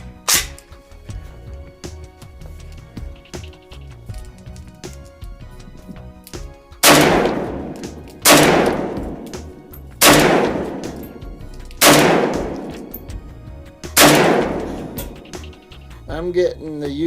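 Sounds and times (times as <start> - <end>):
rifle shots: 6.8 - 13.1, 14.0 - 15.5.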